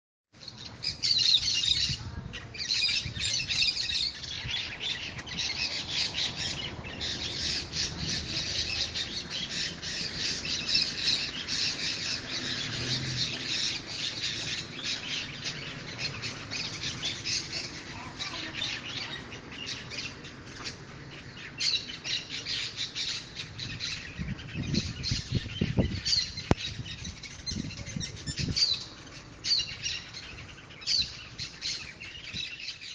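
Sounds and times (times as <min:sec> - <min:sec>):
chorus of birds chirping: 0:00.3 - 0:32.9
low rumbles: 0:01.8 - 0:21.2.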